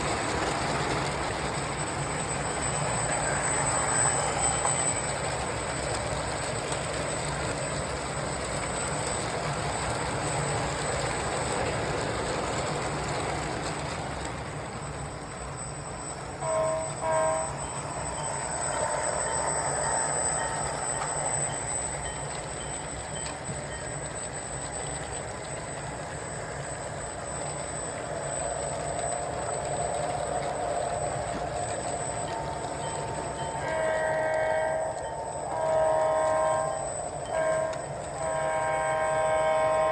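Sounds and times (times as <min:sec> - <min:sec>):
model train rattling on track: 0:00.0 - 0:39.9
train horn toots: 0:16.4 - 0:21.8, 0:32.1 - 0:39.9.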